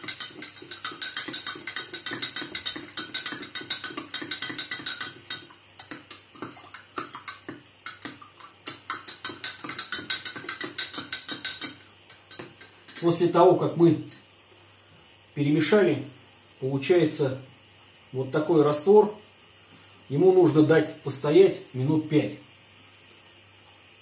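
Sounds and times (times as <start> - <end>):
spoon clinking against glass: 0.0 - 13.2.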